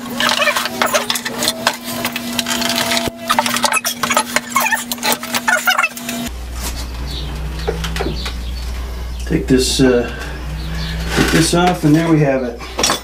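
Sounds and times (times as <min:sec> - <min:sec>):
wood and metal parts clattering: 0:00.0 - 0:06.8, 0:10.1 - 0:13.0
steady hum: 0:00.0 - 0:13.0.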